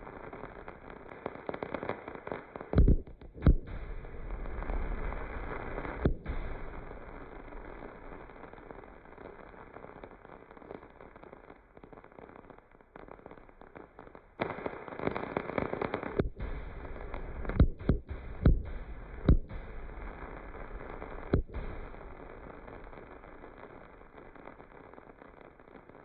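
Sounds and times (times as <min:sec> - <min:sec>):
fireworks crackling: 0:00.0 - 0:26.0
fireworks bangs: 0:13.1 - 0:26.0.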